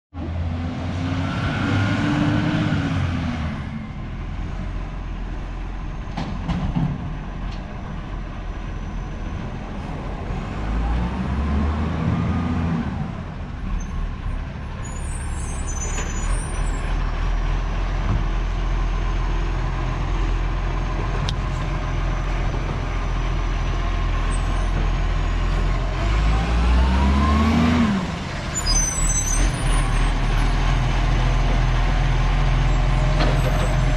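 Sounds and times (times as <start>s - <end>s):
diesel engine revving: 0.2s - 5.6s, 9.4s - 15.0s, 16.2s - 33.9s.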